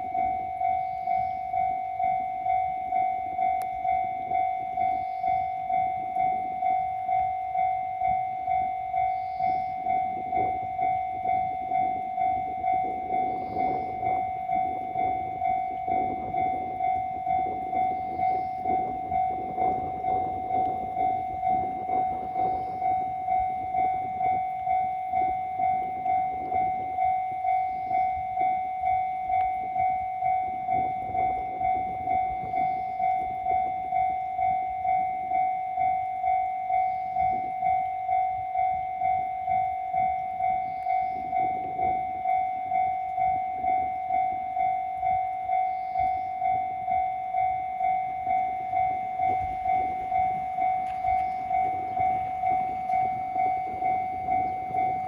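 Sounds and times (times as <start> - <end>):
level crossing warning bell: 0.0 - 55.0.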